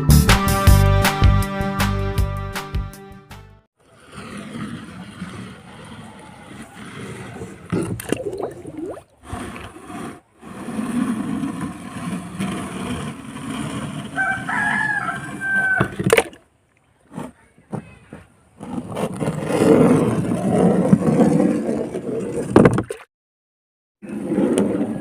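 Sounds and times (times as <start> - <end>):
rooster crowing: 14.2 - 16.0.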